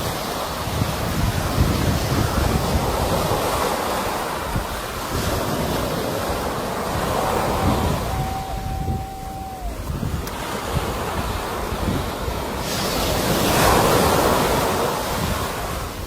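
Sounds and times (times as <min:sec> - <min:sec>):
sea waves washing: 0:00.0 - 0:16.0
wind buffeting microphone: 0:00.0 - 0:16.0
thin steady tone: 0:07.8 - 0:10.1.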